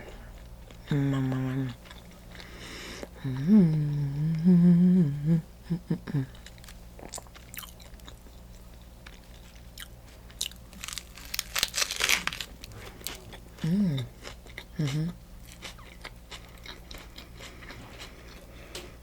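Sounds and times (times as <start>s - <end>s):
person humming mmm: 0.8s - 1.9s, 3.0s - 6.5s, 13.6s - 15.2s
sandwich crunching: 6.4s - 14.8s.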